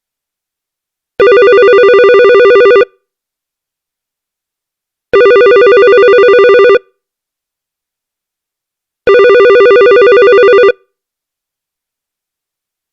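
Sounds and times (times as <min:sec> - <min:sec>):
electronic telephone ringer warbling: 0:09.1 - 0:10.8.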